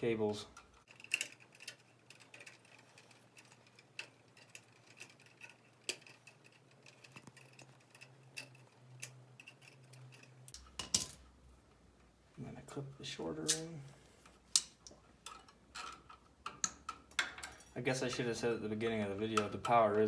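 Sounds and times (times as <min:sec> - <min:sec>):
pliers twisting wires clicking: 0:00.5 - 0:11.2.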